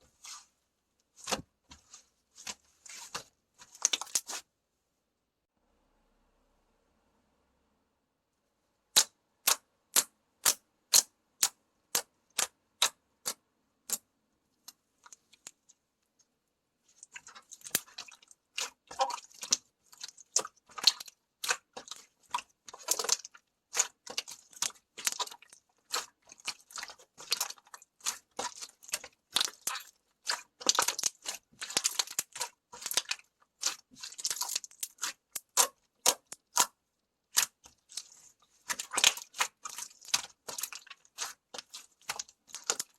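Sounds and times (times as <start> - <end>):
wet slime crackling: 1.1 - 4.4, 16.8 - 42.9.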